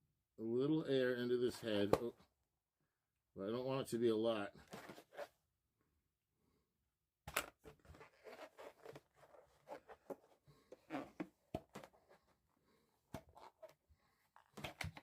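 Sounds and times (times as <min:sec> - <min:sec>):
balloon rubbing and squeaking: 0:07.8 - 0:12.5.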